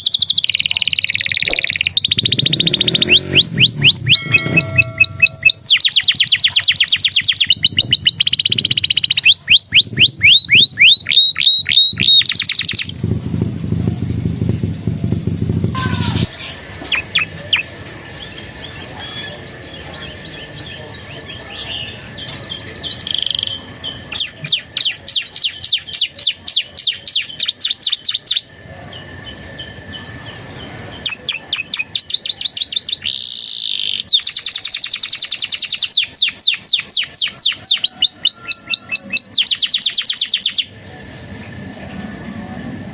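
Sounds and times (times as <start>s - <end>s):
canary singing: 0.0s - 13.0s, 15.8s - 40.7s
low rumbling noise: 1.5s - 6.4s, 7.2s - 10.9s, 12.0s - 24.8s, 40.7s - 42.9s.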